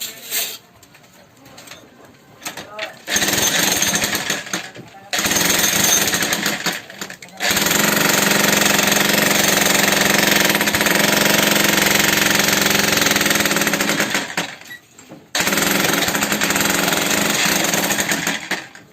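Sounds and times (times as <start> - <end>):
concrete breaker hammering: 3.1 - 14.6, 15.4 - 18.9.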